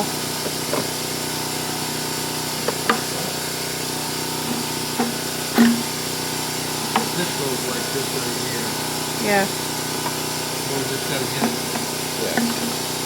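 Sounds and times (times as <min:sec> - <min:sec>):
steady mechanical hum: 0:00.0 - 0:13.0
clicks and clinks of hand tools: 0:04.4 - 0:06.0, 0:06.8 - 0:07.5, 0:11.3 - 0:13.0.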